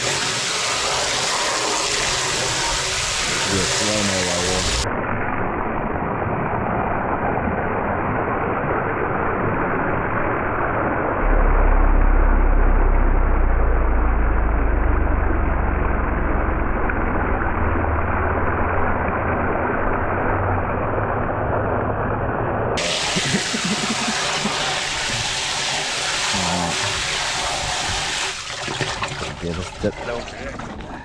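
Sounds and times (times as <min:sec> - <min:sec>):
hose spraying water: 0:00.0 - 0:04.9, 0:22.8 - 0:30.8
low steady hum: 0:10.2 - 0:25.5.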